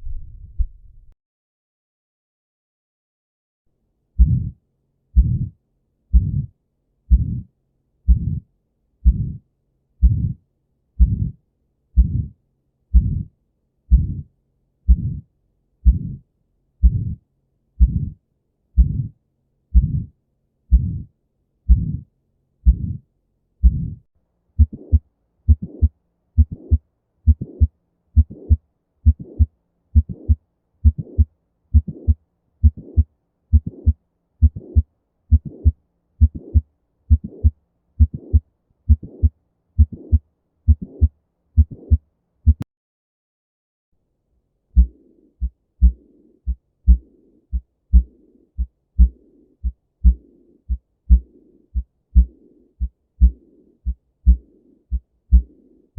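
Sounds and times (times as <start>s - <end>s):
heartbeat: 0.0s - 1.1s, 4.2s - 4.6s, 5.2s - 6.5s, 7.1s - 7.5s, 8.1s - 8.4s, 9.0s - 9.4s, 10.0s - 10.4s, 11.0s - 11.4s, 12.0s - 13.3s, 13.9s - 14.3s, 14.9s - 16.2s, 16.8s - 17.2s, 17.8s - 18.2s, 18.8s - 20.1s, 20.7s - 21.1s, 21.7s - 23.0s, 23.6s - 24.0s, 24.6s - 42.7s, 44.8s - 55.7s.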